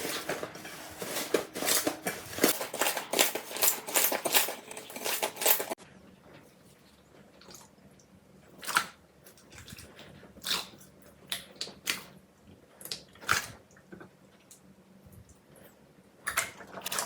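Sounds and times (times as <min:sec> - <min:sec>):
wet squelches of slime: 0:06.7 - 0:14.6.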